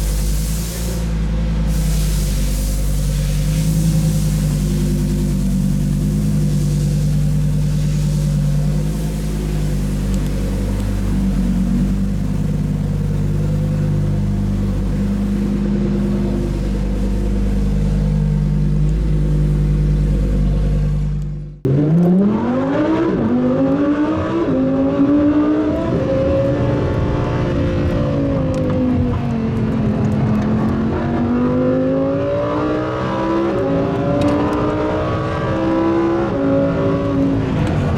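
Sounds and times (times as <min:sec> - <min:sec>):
car engine idling: 0:00.0 - 0:21.9
car engine revving: 0:00.0 - 0:37.9.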